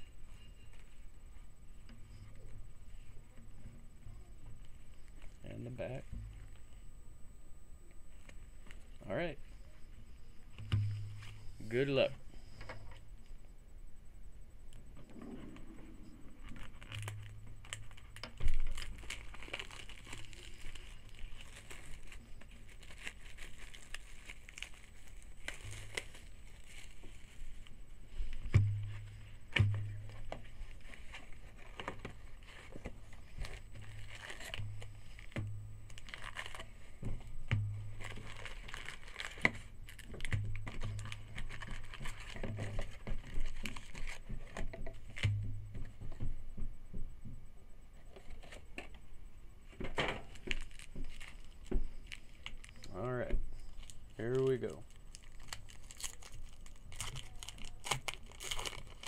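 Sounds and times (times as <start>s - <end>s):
low hum: 0.0s - 48.2s
wrappers crinkling and tearing: 16.4s - 45.3s, 50.2s - 59.0s.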